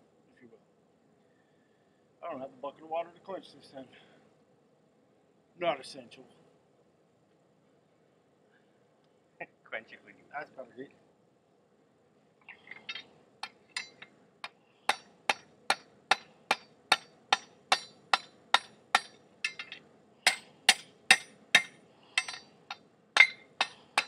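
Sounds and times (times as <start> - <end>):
hammer striking iron on anvil: 12.9 - 22.5, 23.2 - 24.0.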